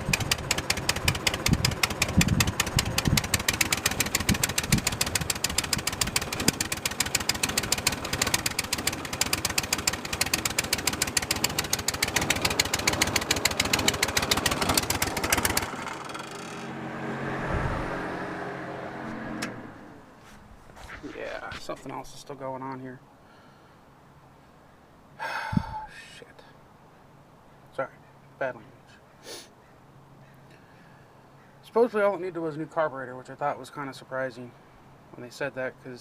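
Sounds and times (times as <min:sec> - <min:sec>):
engine running rough: 0:00.0 - 0:20.2.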